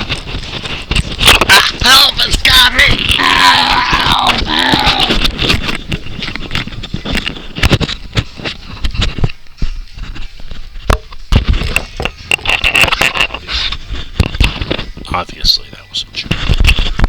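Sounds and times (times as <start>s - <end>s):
camera handling knocks and rustling: 5.2s - 9.4s, 10.0s - 15.0s.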